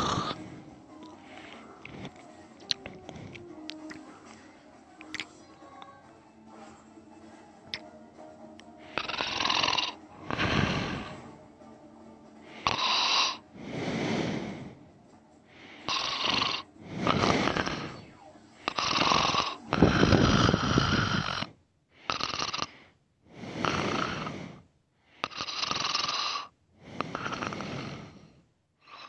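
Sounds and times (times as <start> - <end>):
man snoring: 0.0 - 0.6, 8.9 - 11.3, 12.5 - 14.8, 15.8 - 18.1, 18.7 - 24.6, 25.2 - 29.0.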